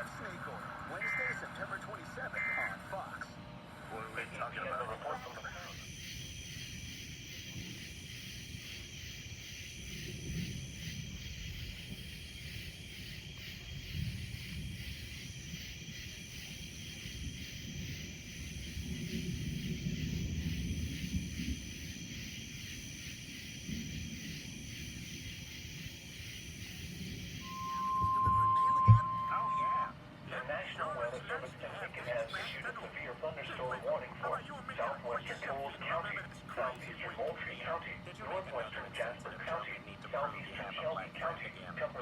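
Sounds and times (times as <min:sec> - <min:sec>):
steady background hiss: 0:00.0 - 0:42.0
faint high thin tone: 0:27.4 - 0:30.0.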